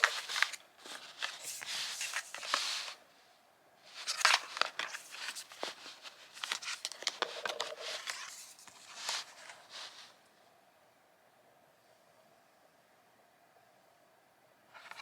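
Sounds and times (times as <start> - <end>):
packaging rustling: 0.0 - 3.0, 3.9 - 10.1.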